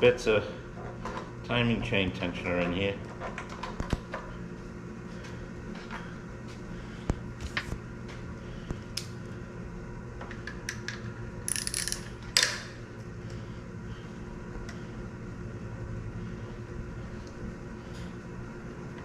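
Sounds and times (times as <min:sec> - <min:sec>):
low hum: 0:03.9 - 0:19.0
metal parts clicking and clinking: 0:10.7 - 0:12.6.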